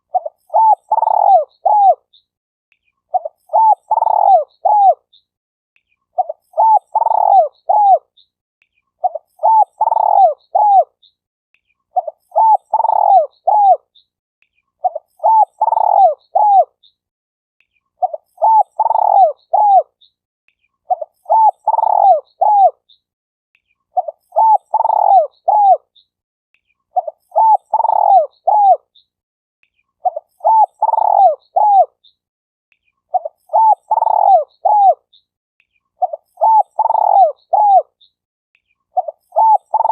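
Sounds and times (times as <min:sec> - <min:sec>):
dove cooing: 0:00.0 - 0:02.0, 0:03.1 - 0:05.0, 0:06.2 - 0:08.1, 0:09.0 - 0:10.9, 0:12.0 - 0:13.8, 0:14.8 - 0:16.7, 0:18.0 - 0:19.9, 0:20.9 - 0:22.8, 0:24.0 - 0:25.8, 0:27.0 - 0:28.8, 0:30.0 - 0:31.9, 0:33.1 - 0:35.0, 0:36.0 - 0:37.9, 0:39.0 - 0:39.9.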